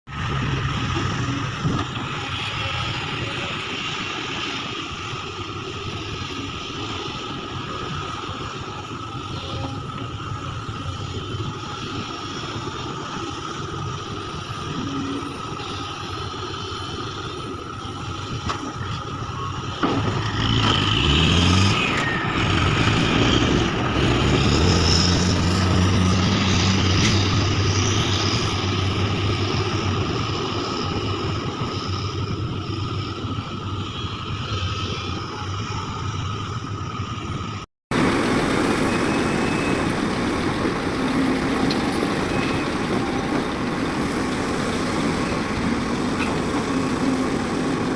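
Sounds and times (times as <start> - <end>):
vehicle engine running: 0.1 - 47.9.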